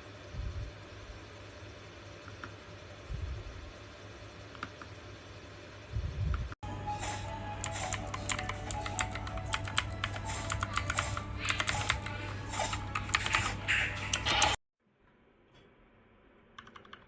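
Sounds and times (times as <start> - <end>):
mechanical keyboard typing: 7.6 - 14.6, 16.6 - 17.0.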